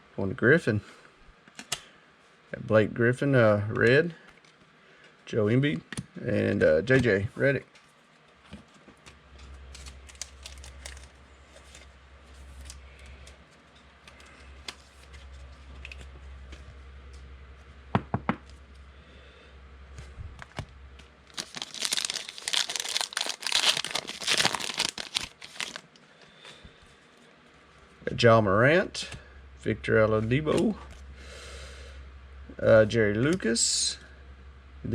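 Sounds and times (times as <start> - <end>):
foil wrapper tearing and crinkling: 9.7 - 11.9, 21.3 - 25.8.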